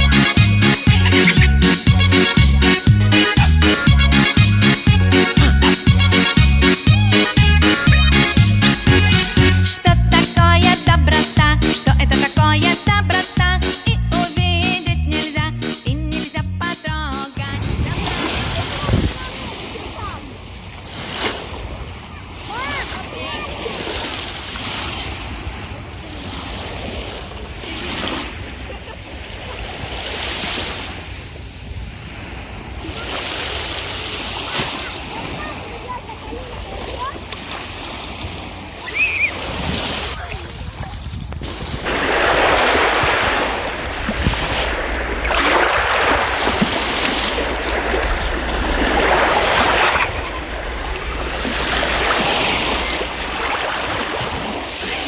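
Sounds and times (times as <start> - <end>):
wind rumble on microphone: 17.4 - 19.5, 39.6 - 55.0
small waves washing onto beach: 17.6 - 55.0.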